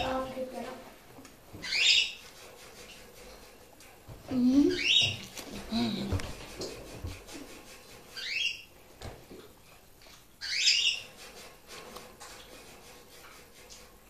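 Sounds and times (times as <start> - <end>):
bird chirping upward calls: 1.6 - 2.2, 4.6 - 5.2, 8.2 - 8.7, 10.4 - 11.1.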